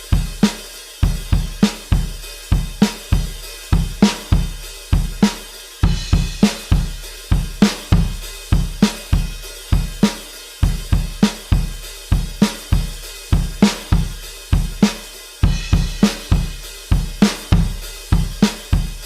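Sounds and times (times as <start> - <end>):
programmed rock drum beat: 0.0 - 19.0.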